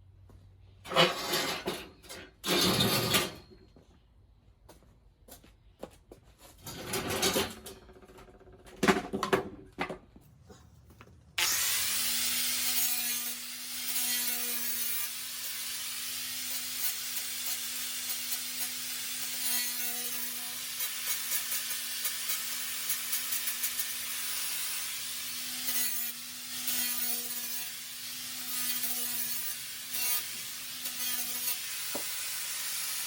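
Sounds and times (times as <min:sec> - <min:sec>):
knocks and scrapes: 0:00.7 - 0:03.6
welding arc crackling hiss: 0:20.7 - 0:26.0, 0:30.0 - 0:33.0.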